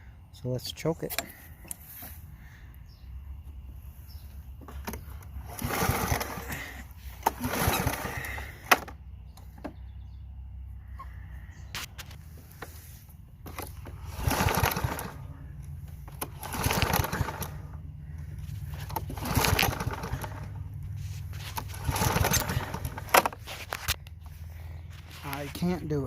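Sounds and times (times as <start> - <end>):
recoil starter rope whirring: 4.5 - 9.8, 11.9 - 26.0.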